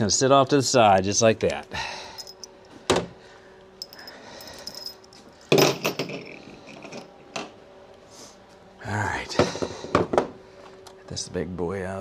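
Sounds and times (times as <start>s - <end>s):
metal parts and tools clinking: 2.1s - 2.6s, 3.8s - 7.1s.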